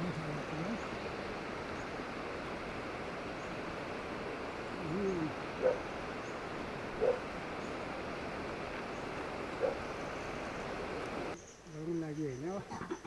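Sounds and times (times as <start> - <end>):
animal calling: 4.8 - 6.4, 7.0 - 7.3, 9.6 - 10.0.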